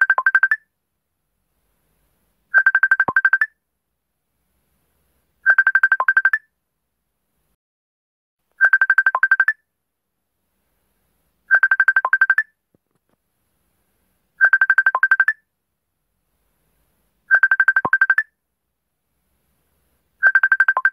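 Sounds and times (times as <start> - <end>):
ringtone of rapid beeps: 0.0 - 0.6, 2.5 - 3.6, 5.4 - 6.5, 8.6 - 9.7, 11.5 - 12.5, 14.4 - 15.5, 17.3 - 18.4, 20.2 - 20.9.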